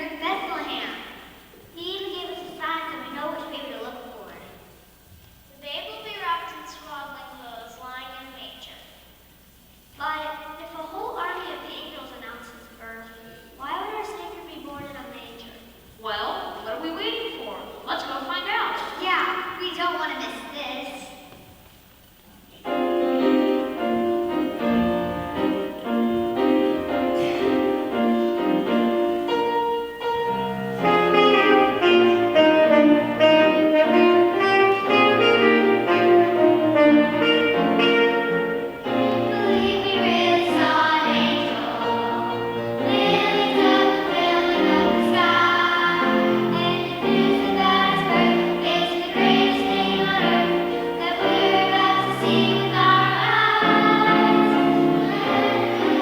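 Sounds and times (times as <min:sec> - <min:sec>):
instrumental accompaniment: 0:22.0 - 0:56.0
choir singing: 0:30.4 - 0:56.0.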